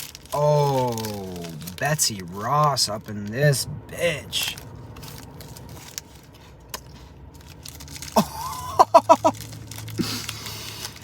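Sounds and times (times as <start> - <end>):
cereal bar crunching: 0.0 - 11.0
person chewing: 4.7 - 11.0.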